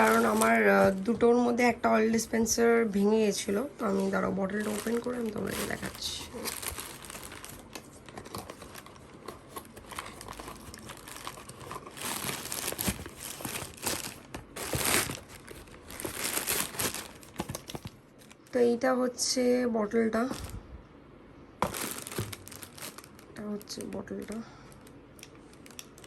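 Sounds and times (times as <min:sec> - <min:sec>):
packaging crinkling and tearing: 0:00.0 - 0:01.0, 0:03.8 - 0:18.5, 0:21.6 - 0:26.0.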